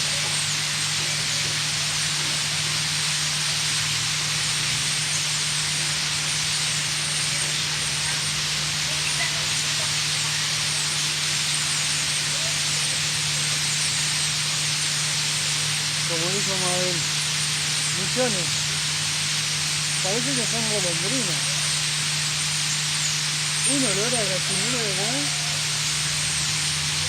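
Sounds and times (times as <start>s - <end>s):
flock of birds chattering: 0.0s - 27.0s
steady low hum: 0.0s - 27.0s.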